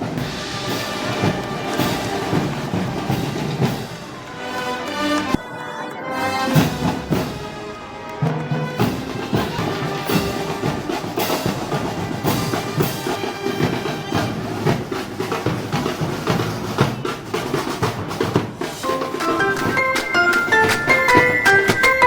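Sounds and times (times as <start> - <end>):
snare and bass drum beat: 0.0 - 4.2, 8.4 - 22.0
band music: 0.0 - 13.9, 18.6 - 22.0.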